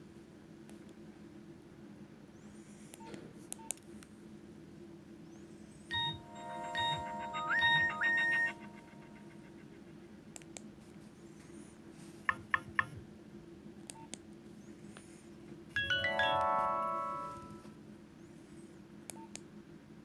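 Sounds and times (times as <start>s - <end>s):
phone key beeps: 5.9s - 9.5s
mobile phone ringtone melody: 5.9s - 9.7s, 15.8s - 17.7s.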